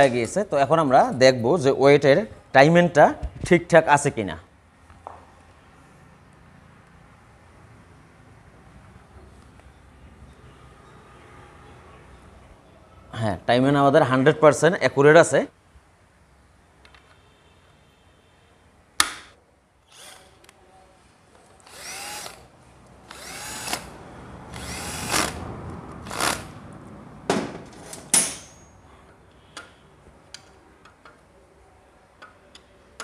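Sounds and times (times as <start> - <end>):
power drill whirring: 19.9 - 20.4, 21.6 - 25.4, 26.0 - 26.6.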